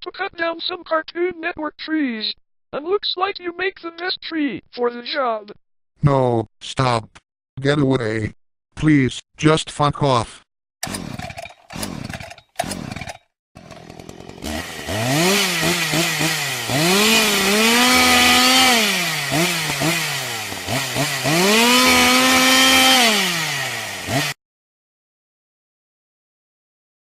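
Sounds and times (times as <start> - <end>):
chainsaw revving: 10.8 - 24.4.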